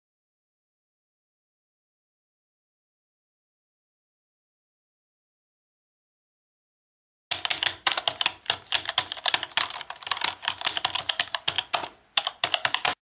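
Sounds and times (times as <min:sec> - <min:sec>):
typing on keyboard: 0:07.3 - 0:13.0.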